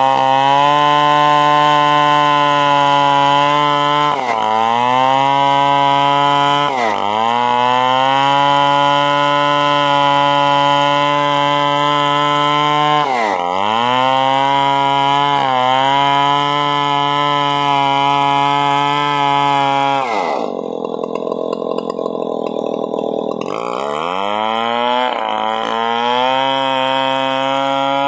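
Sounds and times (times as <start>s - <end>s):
chainsaw sawing wood: 0.0s - 28.0s.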